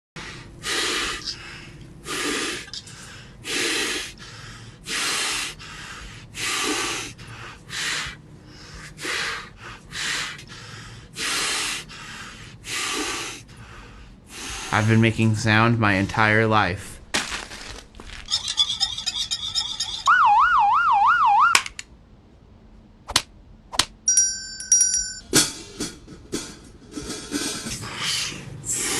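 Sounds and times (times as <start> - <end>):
person breathing heavily: 0.2 - 15.0, 26.4 - 28.9.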